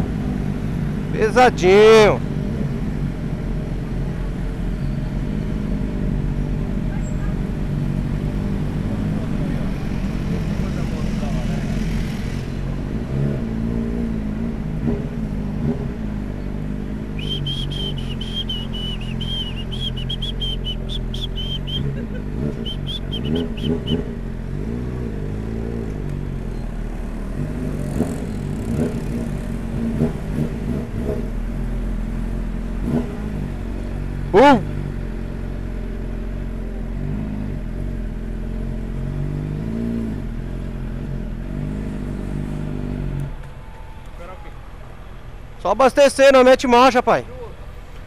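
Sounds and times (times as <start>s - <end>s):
motorcycle engine revving: 2.2s - 43.4s
high chirps: 17.2s - 24.1s.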